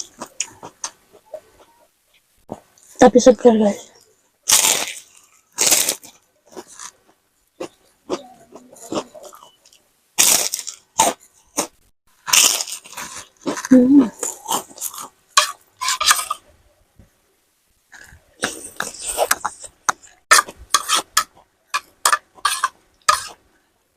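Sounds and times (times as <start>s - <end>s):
quiet chewing: 0.0s - 3.0s, 3.9s - 9.9s, 12.6s - 15.6s
crunchy bites: 4.4s - 8.2s, 8.9s - 16.0s.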